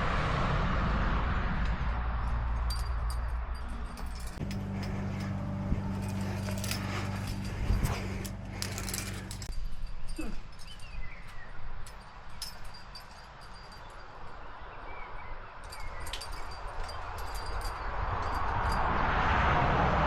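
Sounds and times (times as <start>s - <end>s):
low steady hum: 1.3s - 9.6s
metal climbing gear clinking: 2.2s - 19.0s.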